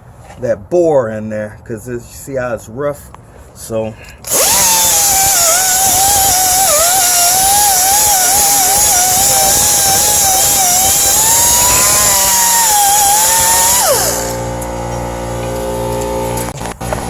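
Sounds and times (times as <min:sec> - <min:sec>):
pneumatic air tool whining: 0:04.2 - 0:17.0.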